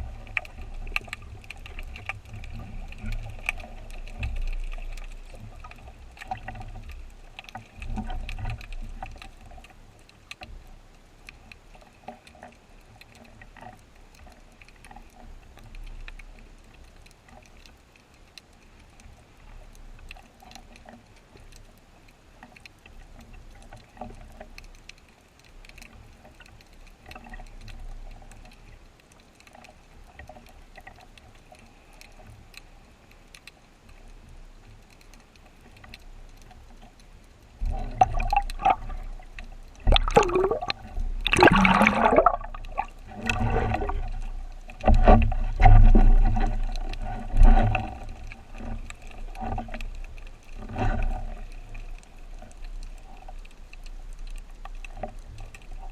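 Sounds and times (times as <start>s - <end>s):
underwater clicks and crackling: 0.0s - 55.9s
low underwater thumps: 39.8s - 44.1s.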